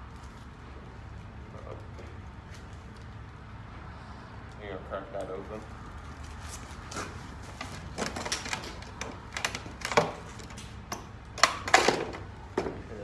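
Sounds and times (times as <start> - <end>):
small hard parts clicking and rattling: 6.9 - 12.7.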